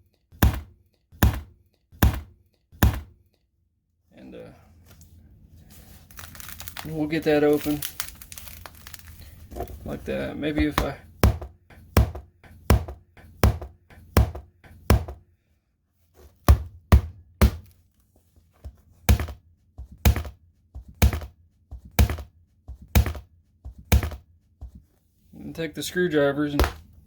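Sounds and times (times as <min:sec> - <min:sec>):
hatchet chopping into tablet: 0:00.4 - 0:03.2, 0:10.6 - 0:15.2, 0:16.5 - 0:17.7, 0:19.1 - 0:19.4, 0:20.0 - 0:20.4, 0:21.0 - 0:21.3, 0:21.9 - 0:22.3, 0:22.9 - 0:24.2, 0:26.6 - 0:26.8.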